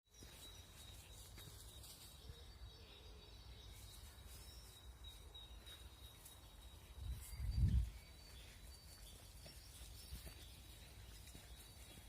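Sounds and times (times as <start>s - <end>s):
faint chirps: 0.1s - 12.0s.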